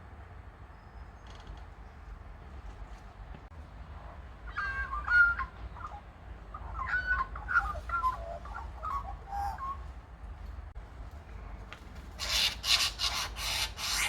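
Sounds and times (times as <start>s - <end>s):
bird calling: 4.4s - 9.9s, 12.2s - 14.0s.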